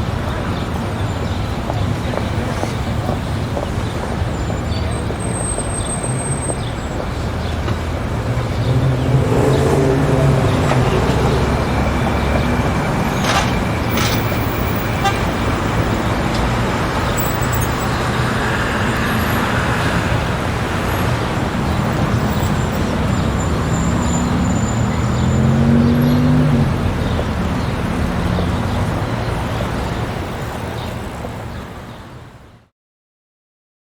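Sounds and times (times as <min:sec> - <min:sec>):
city street traffic: 0:00.0 - 0:32.7
vehicle engine pulling past: 0:07.5 - 0:30.2.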